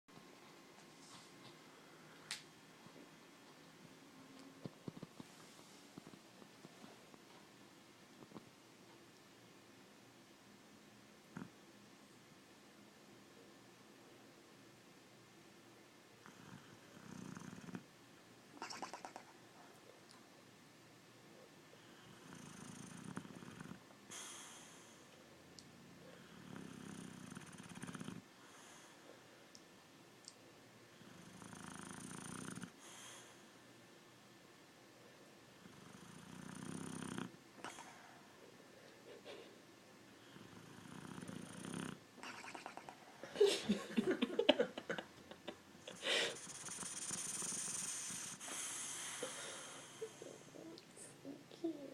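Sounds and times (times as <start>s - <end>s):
dog snoring: 11.3s - 11.6s, 16.2s - 17.9s, 21.8s - 25.1s, 26.2s - 28.9s, 31.0s - 33.4s, 35.6s - 38.0s, 40.2s - 42.6s, 46.2s - 50.6s
dog snorting: 18.6s - 19.4s, 46.2s - 49.2s
long hissing breath: 24.1s - 25.2s, 46.0s - 50.6s
breathy exhale: 47.8s - 50.4s.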